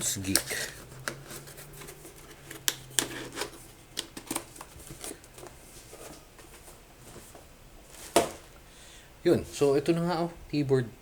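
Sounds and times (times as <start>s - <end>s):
packaging clicks and rustles: 0.0s - 8.5s.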